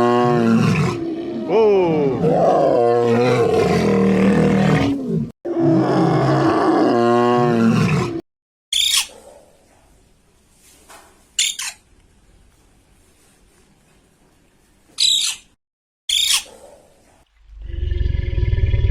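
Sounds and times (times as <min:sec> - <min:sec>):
big cat roaring: 0:00.0 - 0:08.2, 0:17.5 - 0:18.9.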